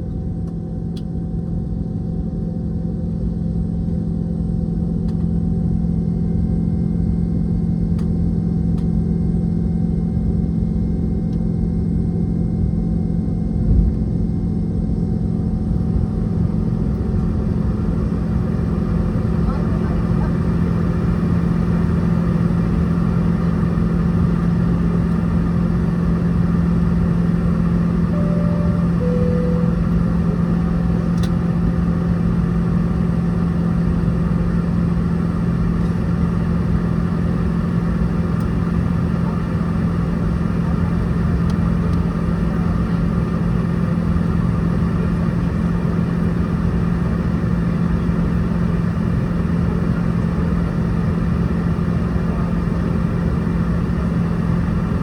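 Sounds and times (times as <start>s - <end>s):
aircraft cabin engine drone: 0.0s - 55.0s
two-note cabin chime: 28.1s - 31.0s.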